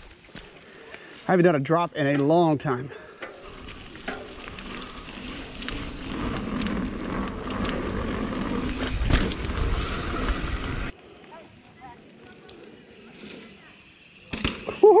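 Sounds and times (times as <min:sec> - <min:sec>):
bike rattling clicks: 0:00.0 - 0:01.1, 0:03.1 - 0:10.7
bike tyre noise: 0:00.0 - 0:15.0
bike landing thump: 0:14.3 - 0:14.8.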